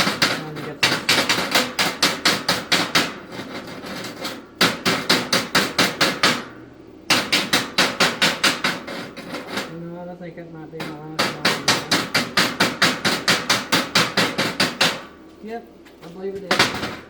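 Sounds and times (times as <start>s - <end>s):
chipping hammer striking metal: 0.0s - 3.4s, 4.6s - 8.9s, 10.8s - 15.1s.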